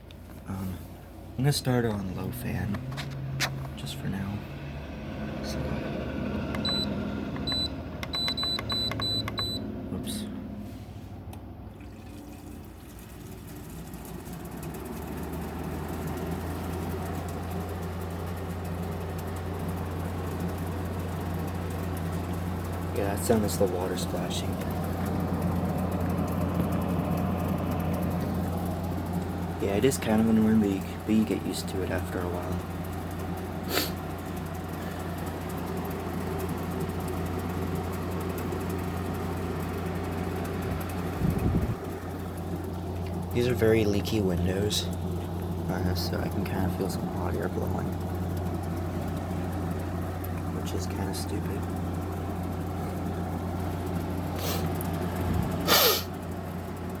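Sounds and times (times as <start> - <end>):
air conditioner fan humming: 0.0 - 57.0
water splashing inside unit: 11.8 - 13.7.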